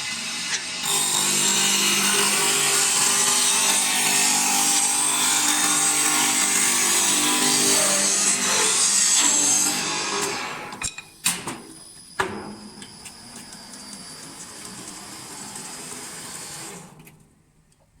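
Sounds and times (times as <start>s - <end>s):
woodturning machine cutting: 0.0s - 10.8s, 13.4s - 16.9s.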